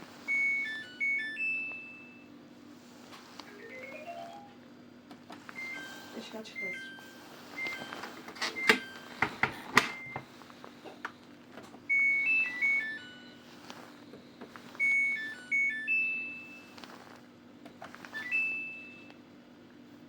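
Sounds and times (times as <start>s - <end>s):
washing machine beeps: 0.0s - 2.5s, 3.4s - 4.6s, 5.4s - 10.5s, 11.8s - 17.2s, 17.9s - 19.3s.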